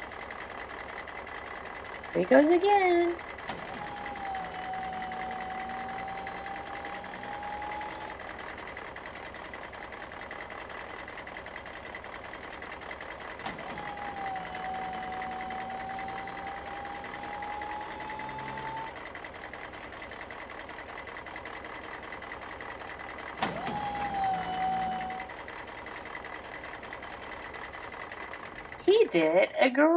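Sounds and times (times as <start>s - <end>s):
motor whine rising in pitch: 3.3s - 9.6s, 13.4s - 19.5s, 23.4s - 25.4s.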